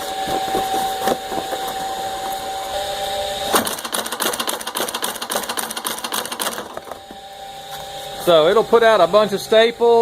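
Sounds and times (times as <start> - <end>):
electric motor humming: 0.0 - 10.0
stapler head rapid clacks: 3.6 - 6.8.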